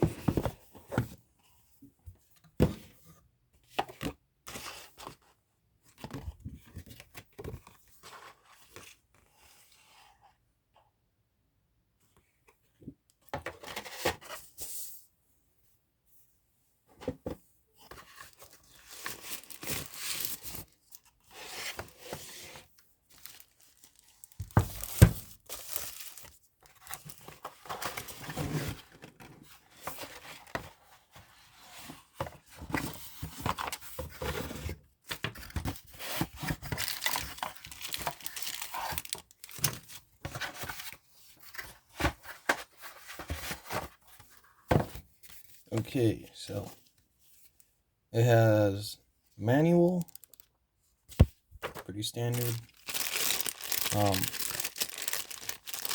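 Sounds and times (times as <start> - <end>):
packaging tearing and crinkling: 19.1 - 20.6, 23.2 - 26.3, 36.8 - 39.8, 50.0 - 50.5, 52.3 - 55.9
box being handled: 51.1 - 55.9.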